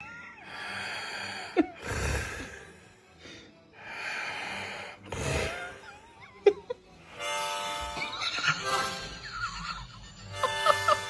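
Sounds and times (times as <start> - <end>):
rasping snoring snorts: 5.1 - 5.8
reedy harmonica chords: 7.1 - 9.2.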